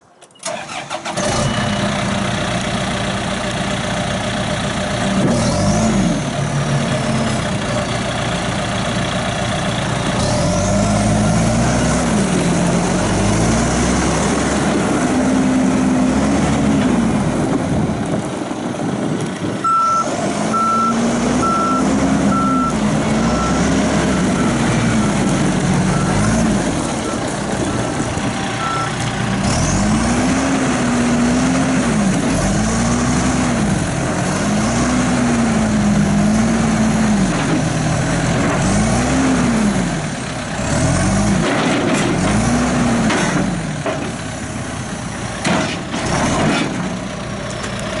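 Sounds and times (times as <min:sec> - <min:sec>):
backhoe diesel engine revving: 0:00.4 - 0:48.0
backup alarm beeping: 0:19.6 - 0:25.3, 0:28.6 - 0:29.0.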